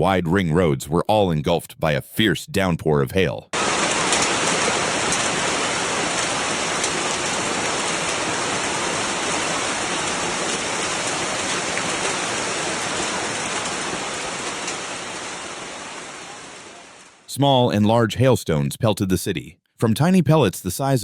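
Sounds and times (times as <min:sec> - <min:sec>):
sharp rain ticks: 0:03.6 - 0:17.3
heavy rain hissing: 0:03.6 - 0:17.4.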